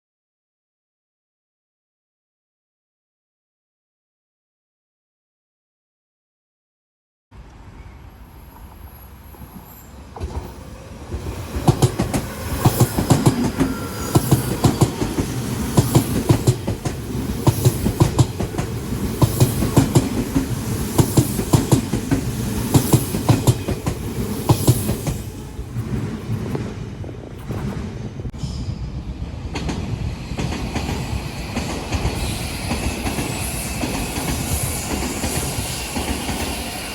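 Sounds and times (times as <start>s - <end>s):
electric train passing: 7.4s - 36.9s
wheels clacking over rail joints: 9.4s - 28.5s.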